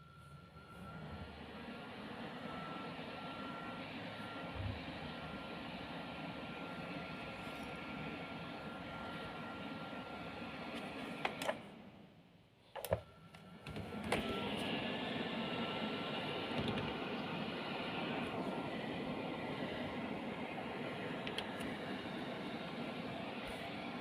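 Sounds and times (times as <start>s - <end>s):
fan heater blowing: 0.0s - 12.2s, 12.8s - 24.0s.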